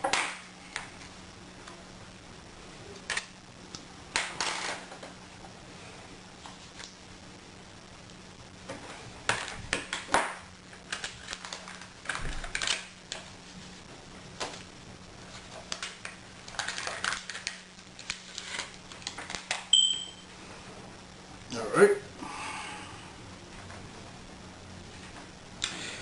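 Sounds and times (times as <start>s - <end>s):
short high beep: 19.7s - 20.3s.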